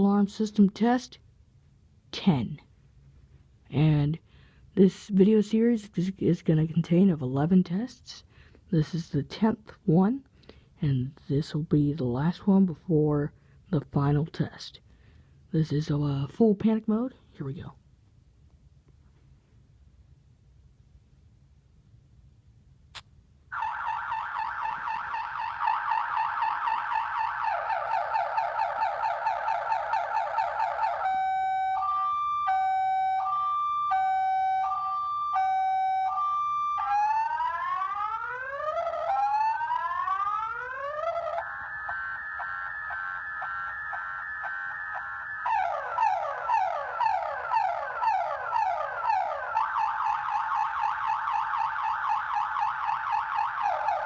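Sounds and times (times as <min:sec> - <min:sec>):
car alarm siren: 0:23.5 - 0:54.0.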